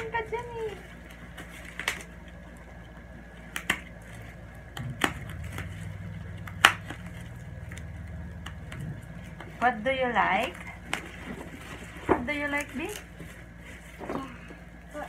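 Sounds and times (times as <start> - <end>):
packaging clicks and snaps: 3.5 - 9.5
low rumble: 4.1 - 12.0.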